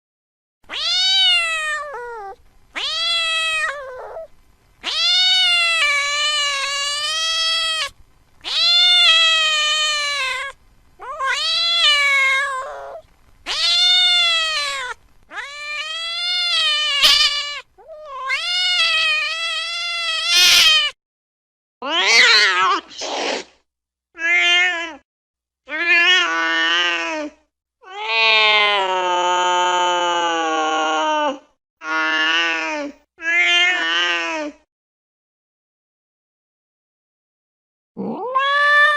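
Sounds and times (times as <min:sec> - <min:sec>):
cat meowing: 0:00.7 - 0:21.0, 0:21.8 - 0:22.9, 0:24.2 - 0:25.0, 0:31.8 - 0:34.6, 0:38.0 - 0:38.9.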